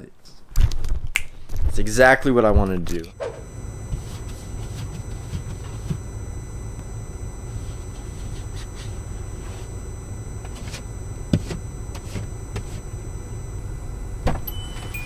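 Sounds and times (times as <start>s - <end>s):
car engine rumble: 3.1s - 15.0s.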